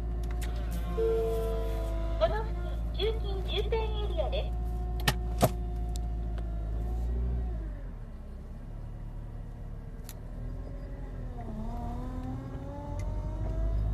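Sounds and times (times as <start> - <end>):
power steering pump whining: 0.0 - 7.8
car engine running: 0.0 - 13.9.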